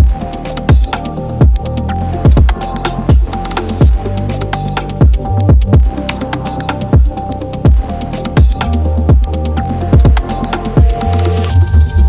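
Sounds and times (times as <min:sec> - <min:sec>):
electronic music: 0:00.0 - 0:12.0.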